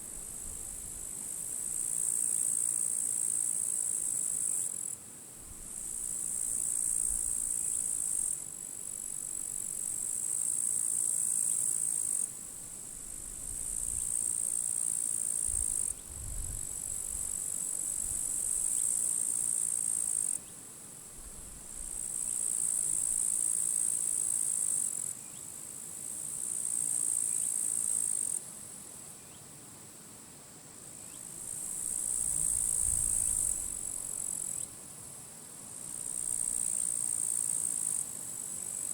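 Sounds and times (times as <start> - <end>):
wind rumble on microphone: 15.5 - 17.3, 32.3 - 33.8.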